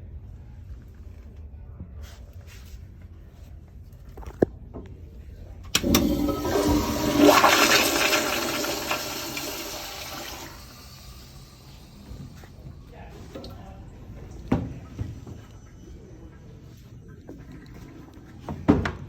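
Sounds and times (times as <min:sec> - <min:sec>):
toilet flush handle click: 0:05.7 - 0:09.6
toilet water rushing: 0:05.8 - 0:12.3.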